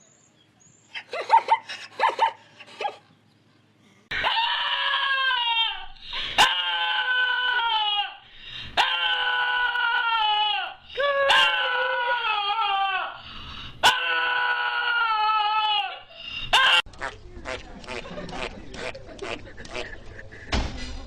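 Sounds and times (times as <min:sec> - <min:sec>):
dog yipping: 0:01.2 - 0:03.0.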